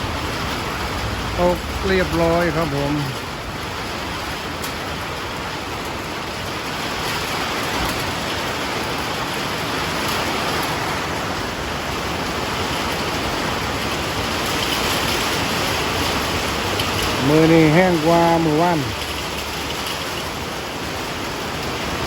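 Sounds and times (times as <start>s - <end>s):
rain falling steadily: 0.0s - 22.0s.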